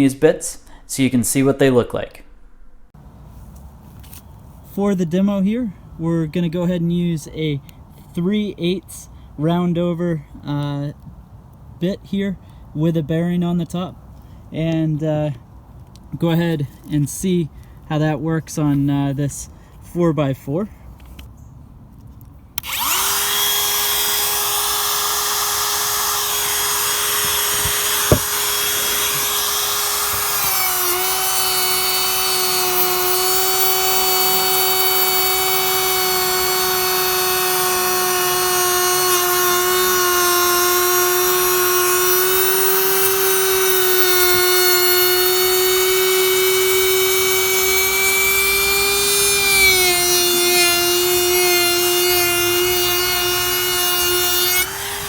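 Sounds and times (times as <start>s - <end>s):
wood router whining: 22.6s - 55.0s.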